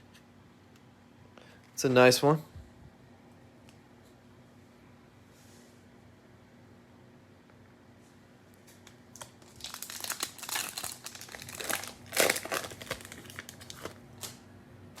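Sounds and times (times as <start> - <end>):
cellophane wrapper crinkling: 8.8 - 14.4.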